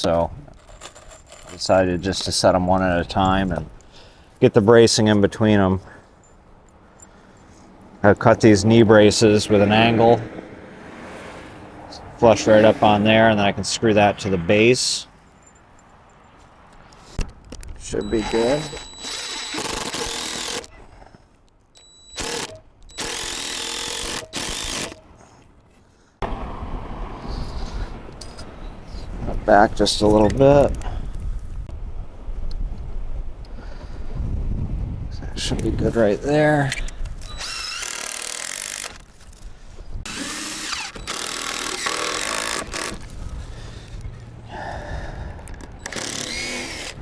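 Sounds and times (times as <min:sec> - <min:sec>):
power driver driving screws: 0:18.0 - 0:20.7, 0:21.8 - 0:25.0, 0:36.7 - 0:39.1, 0:40.1 - 0:43.1, 0:45.8 - 0:47.0
wind buffeting the microphone: 0:26.2 - 0:37.4, 0:42.9 - 0:45.8.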